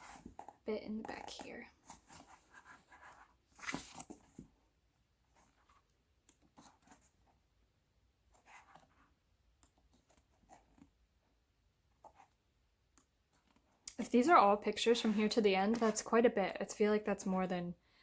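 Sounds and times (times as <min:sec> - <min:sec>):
paper pages turning: 0:01.9 - 0:04.4.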